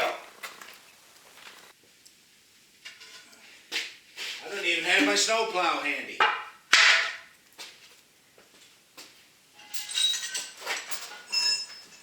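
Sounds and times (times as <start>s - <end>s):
metallic clinking and rattling: 9.6s - 12.0s.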